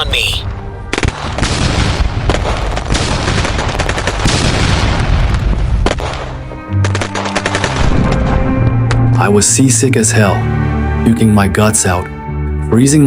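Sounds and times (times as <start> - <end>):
background music: 0.0 - 1.6, 6.0 - 13.0
explosions: 0.0 - 6.3, 6.9 - 8.7.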